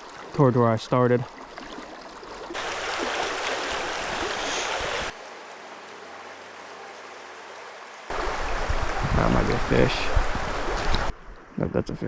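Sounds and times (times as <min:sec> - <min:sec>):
stream water rushing: 0:02.5 - 0:11.5.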